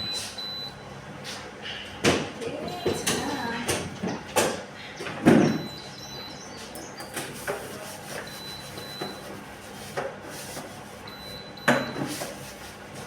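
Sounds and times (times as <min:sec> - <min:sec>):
clunks and knocks in fridge: 0:02.0 - 0:05.8, 0:11.6 - 0:12.2.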